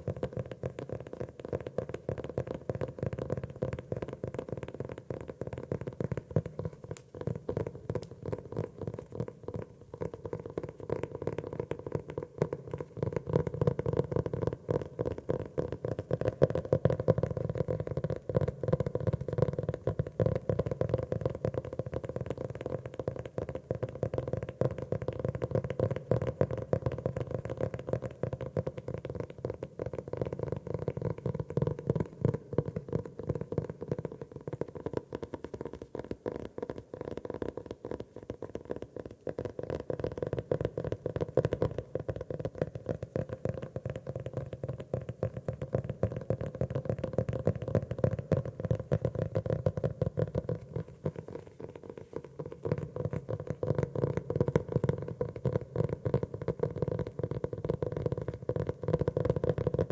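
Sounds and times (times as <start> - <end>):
fingers tapping on notebook: 1.5 - 59.9.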